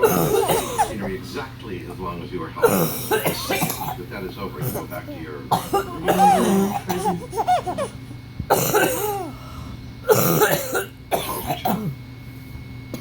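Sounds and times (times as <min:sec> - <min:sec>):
woman coughing: 0:00.0 - 0:01.1, 0:02.6 - 0:04.0, 0:04.6 - 0:09.4, 0:10.0 - 0:12.0
throat clearing: 0:04.6 - 0:07.9, 0:10.1 - 0:12.0.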